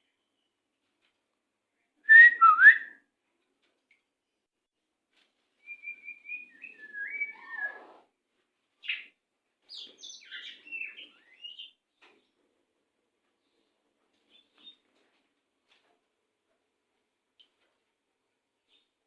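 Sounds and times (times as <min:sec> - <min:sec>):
bird singing: 0:05.6 - 0:07.8, 0:09.7 - 0:11.8.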